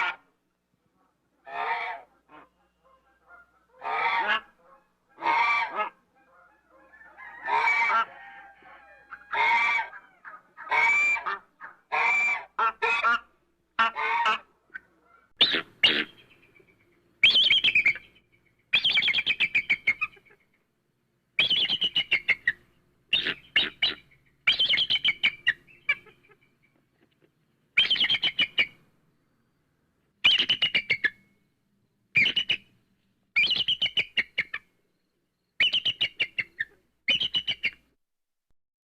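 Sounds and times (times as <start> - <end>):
bird chirping: 15.4 - 20.6, 21.4 - 27.2, 27.8 - 37.8.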